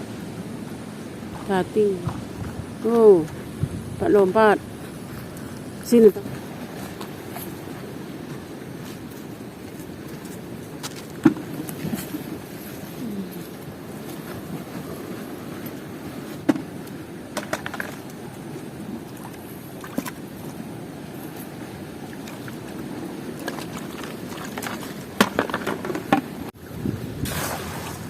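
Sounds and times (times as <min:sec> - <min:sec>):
wind buffeting microphone: 0:00.0 - 0:17.3, 0:25.8 - 0:28.0.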